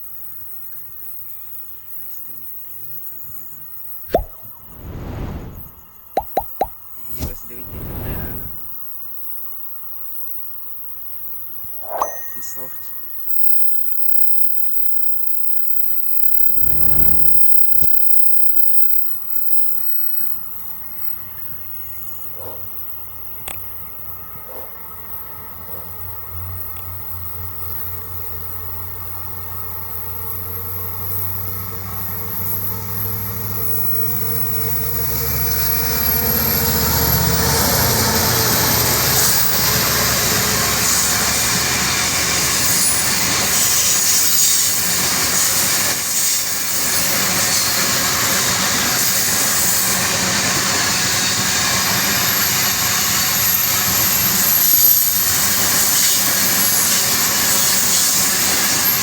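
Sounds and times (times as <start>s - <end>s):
diesel locomotive engine hum: 7.2s - 8.8s, 25.6s - 43.4s.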